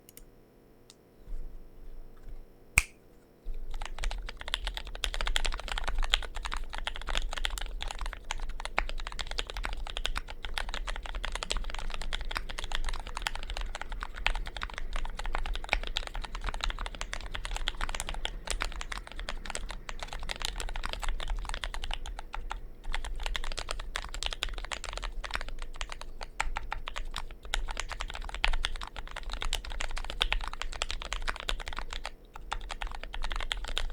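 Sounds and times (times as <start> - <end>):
sharp click: 2.8 - 3.0
fast mechanical keyboard typing: 3.6 - 33.9.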